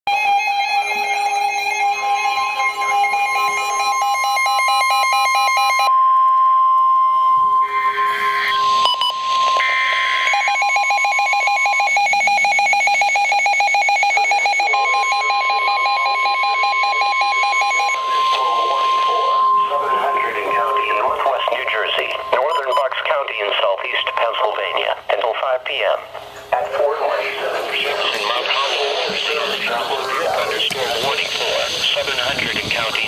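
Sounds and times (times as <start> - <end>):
steady alarm tone: 0.1 - 33.0
fast electronic beeping: 7.6 - 25.2, 27.7 - 33.0.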